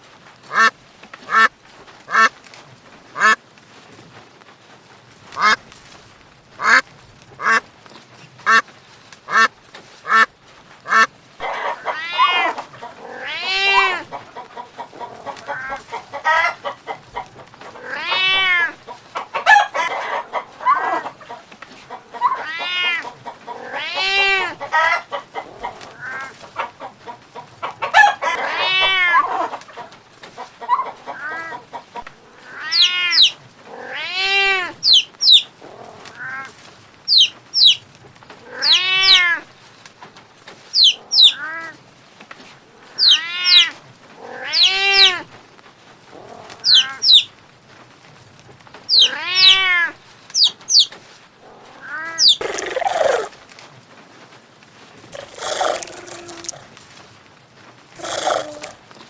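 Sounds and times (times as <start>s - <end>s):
hen calling: 32.5s - 33.3s, 40.8s - 41.4s, 50.4s - 50.9s, 51.9s - 53.4s, 55.2s - 56.7s, 58.0s - 58.8s
chicks peeping: 32.8s - 33.3s, 34.8s - 35.5s, 37.1s - 37.8s, 40.8s - 41.4s, 43.0s - 43.6s, 46.7s - 47.3s, 48.9s - 49.6s, 50.4s - 51.0s, 52.2s - 53.3s, 55.2s - 56.6s, 58.0s - 58.8s.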